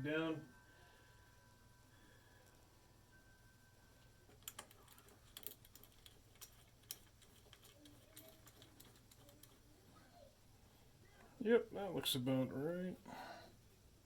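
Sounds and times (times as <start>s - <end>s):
metal and plastic parts clicking: 4.3s - 9.6s.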